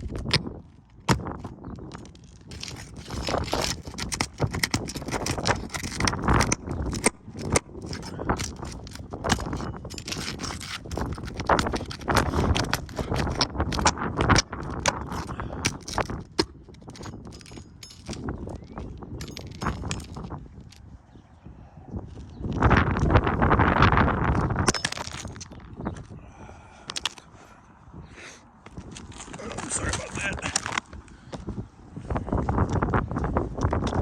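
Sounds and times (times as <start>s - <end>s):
tool scraping roof shingles: 0.0s - 20.3s.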